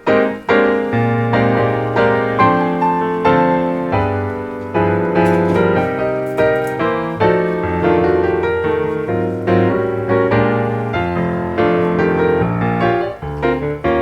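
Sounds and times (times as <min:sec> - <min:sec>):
piano music: 0:00.0 - 0:14.0.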